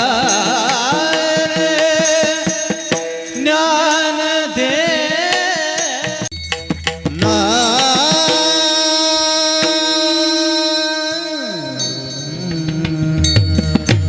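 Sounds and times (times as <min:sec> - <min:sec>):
drum strokes: 0:00.0 - 0:03.6, 0:04.7 - 0:10.4.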